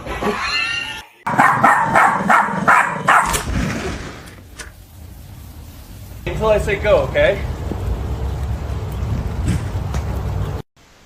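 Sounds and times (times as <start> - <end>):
dog barking rapidly: 1.3 - 3.4.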